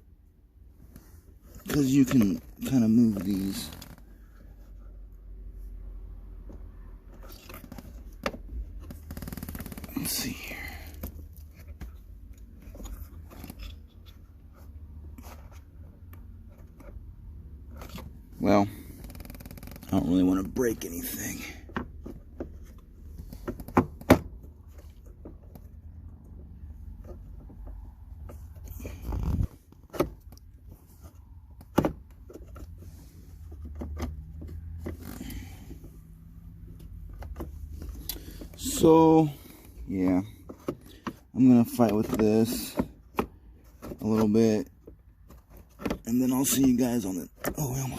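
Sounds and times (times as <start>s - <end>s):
hands prying at gear shifter parts: 15.0s - 47.9s.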